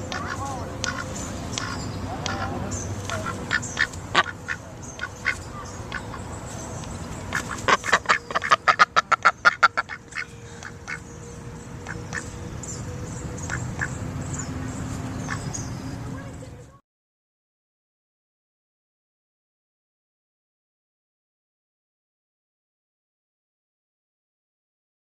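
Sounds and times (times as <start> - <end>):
ducks quacking: 0.0 - 11.1, 11.8 - 12.4, 13.4 - 15.7.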